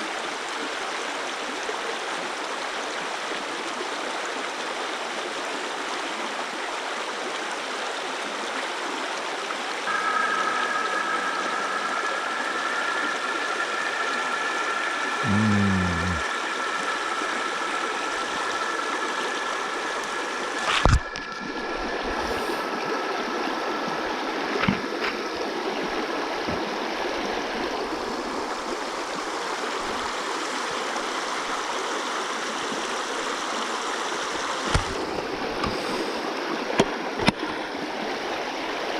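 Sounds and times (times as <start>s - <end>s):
stream water rushing: 0.0s - 38.9s
faint two-note high tone: 9.9s - 24.4s.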